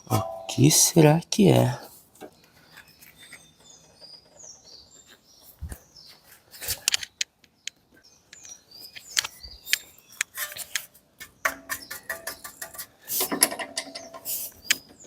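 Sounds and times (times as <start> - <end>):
steady held musical tones: 0.0 - 1.9
birds chirping: 0.0 - 15.0.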